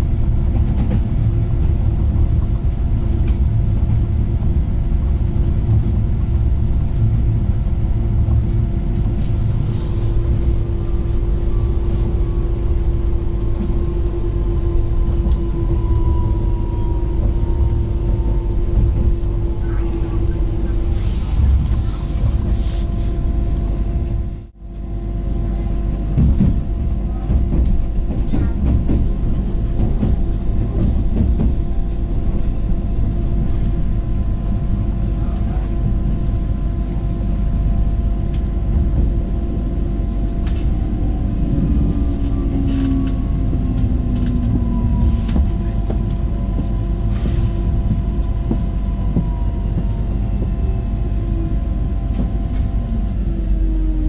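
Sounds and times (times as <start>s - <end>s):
train wheels rumbling on rails: 0.0s - 54.0s
train whine gliding down: 9.7s - 22.4s, 38.8s - 54.0s.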